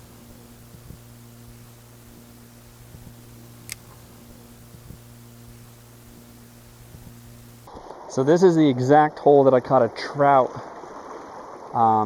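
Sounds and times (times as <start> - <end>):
faint ticks: 0.0 - 7.7
low electrical hum: 0.0 - 7.8
background hiss: 0.0 - 8.7
sharp click: 2.9 - 4.1.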